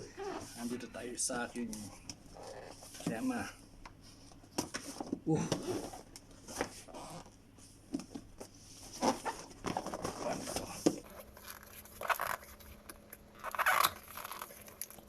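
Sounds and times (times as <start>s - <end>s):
packaging crinkling and rustling: 9.0s - 15.0s.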